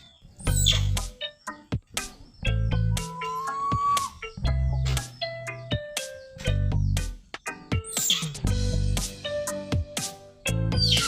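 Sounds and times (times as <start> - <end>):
background music with a beat: 0.4 - 11.0
falling chirp sound effect: 2.8 - 5.0.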